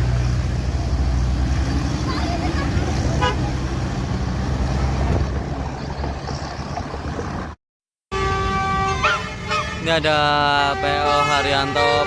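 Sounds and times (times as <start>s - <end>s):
traffic engine rumble and road noise: 0.0s - 12.0s
bus multi-tone horn: 3.2s - 3.5s, 8.1s - 12.0s.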